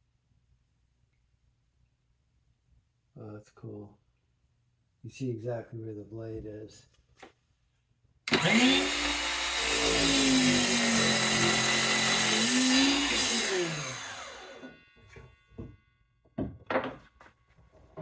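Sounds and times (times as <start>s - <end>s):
miter saw cutting board: 8.3s - 15.3s.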